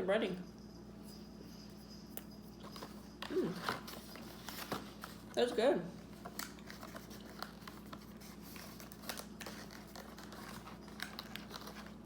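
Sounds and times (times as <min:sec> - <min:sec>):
paper and plastic packaging rustling: 0:02.6 - 0:12.0.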